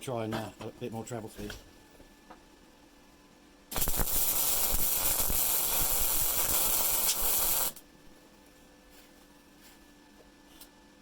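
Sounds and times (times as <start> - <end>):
welding arc crackling and hissing: 3.7 - 7.9.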